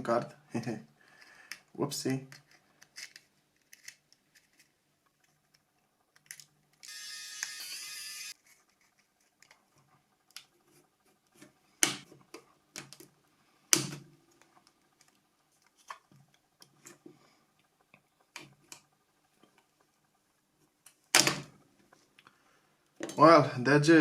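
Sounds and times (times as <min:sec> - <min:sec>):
plastic phone parts clicking: 0:02.3 - 0:07.6.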